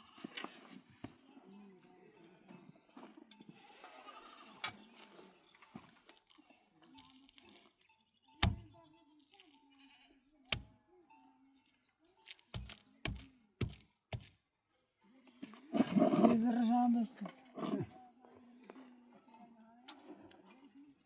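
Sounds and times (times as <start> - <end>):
livestock bleating: 0.0 - 0.4, 3.5 - 4.6, 8.2 - 10.2.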